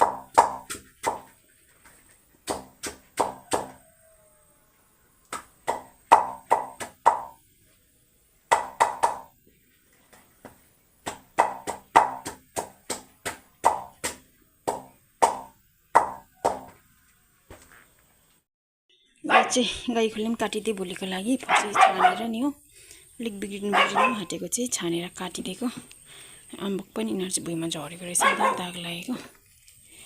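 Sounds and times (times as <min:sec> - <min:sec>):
knife chopping on a board: 0:00.0 - 0:01.3, 0:02.4 - 0:03.8, 0:11.1 - 0:16.7.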